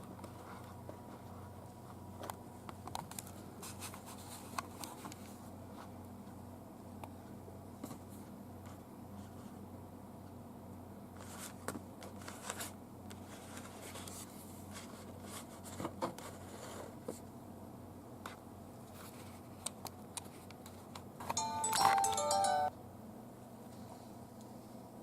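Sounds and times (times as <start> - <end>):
small clicks and rustles of handling: 0.0 - 6.4, 11.2 - 16.4, 18.3 - 22.1.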